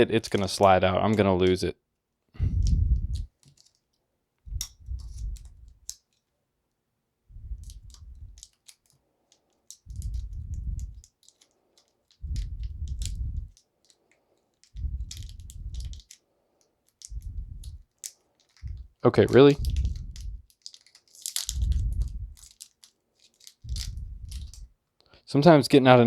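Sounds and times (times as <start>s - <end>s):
small metal clicks and rattling: 2.6s - 4.0s, 4.6s - 6.2s, 7.6s - 24.7s.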